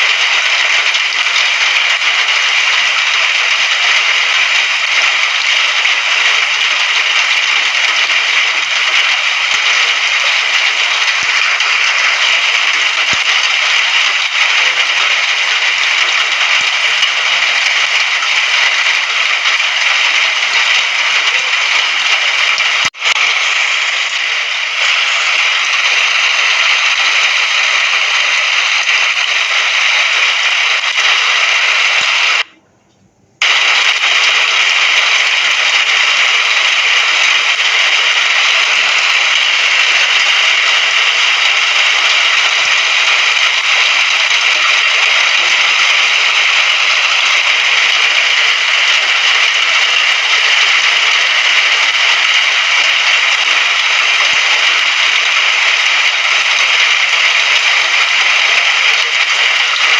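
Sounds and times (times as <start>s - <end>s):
heavy rain hissing: 0.0s - 32.5s, 33.4s - 59.9s.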